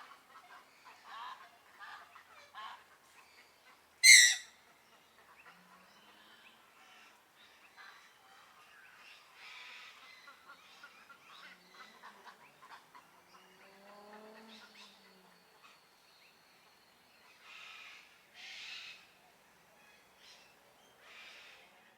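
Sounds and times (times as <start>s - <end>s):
birds chirping and calling: 4.0s - 4.5s
harsh screeching bird calls: 4.0s - 4.5s
low drawn-out bird call: 4.0s - 4.6s.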